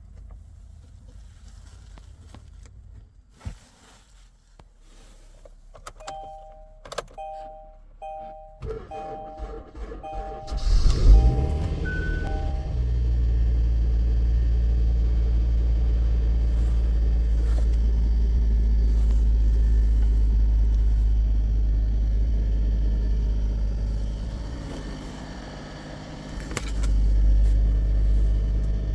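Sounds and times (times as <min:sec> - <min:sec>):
car engine idling: 0:06.1 - 0:28.9.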